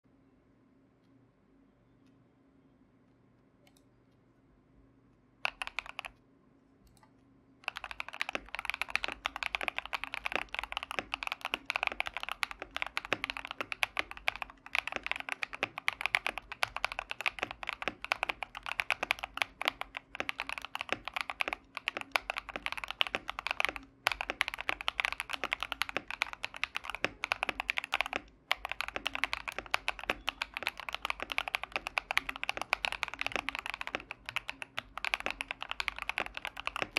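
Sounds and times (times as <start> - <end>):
fast typing on mechanical keyboard: 5.4 - 6.1, 7.6 - 36.9.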